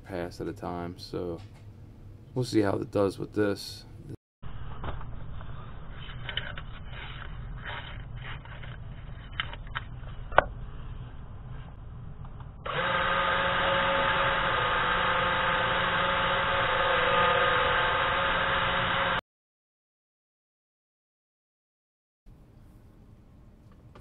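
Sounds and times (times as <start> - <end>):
spindle motor whining: 12.6 - 19.2.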